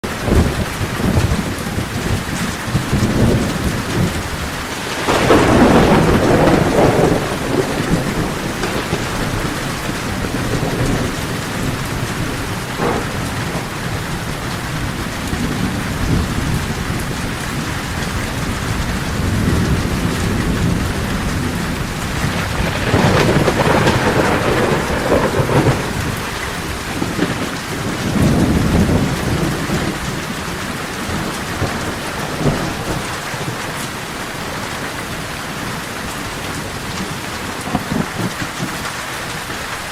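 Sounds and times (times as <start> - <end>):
heavy rain on a tin roof: 0.0 - 39.9
rolling thunder: 0.0 - 39.9.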